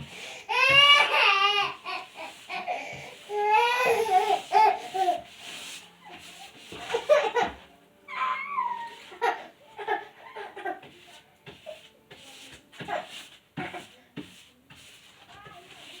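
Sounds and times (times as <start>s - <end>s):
child whining and wailing: 0.5s - 1.9s, 3.3s - 5.2s, 8.1s - 9.4s.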